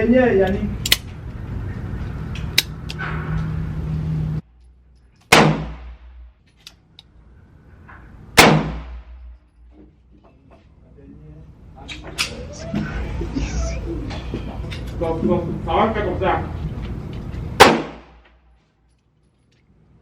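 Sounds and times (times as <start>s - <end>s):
gunshots: 5.3s - 6.2s, 8.4s - 9.2s, 17.6s - 18.2s.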